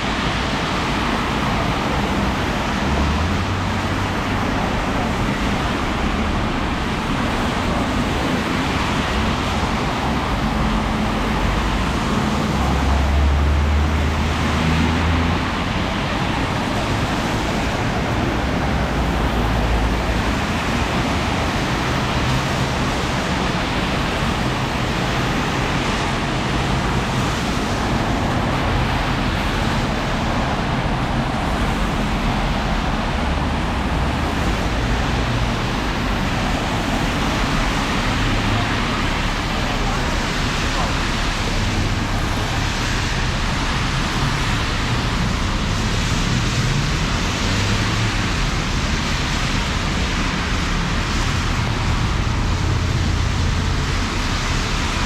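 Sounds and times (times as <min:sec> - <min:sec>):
tyres hissing on wet road: 0:00.0 - 0:55.0
vehicle engines passing: 0:00.0 - 0:55.0.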